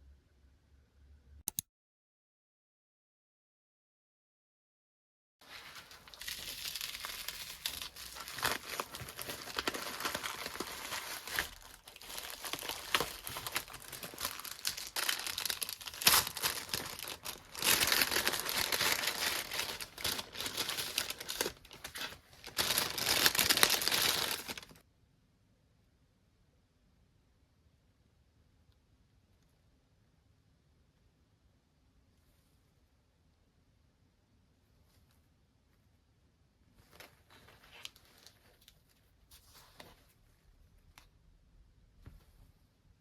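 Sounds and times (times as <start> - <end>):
packaging crinkling and tearing: 5.5 - 24.8.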